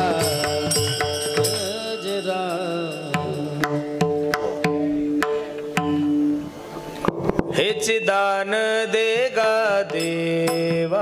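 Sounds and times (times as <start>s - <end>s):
wavering melodic line: 0.0s - 7.0s
drum strikes: 0.0s - 11.0s.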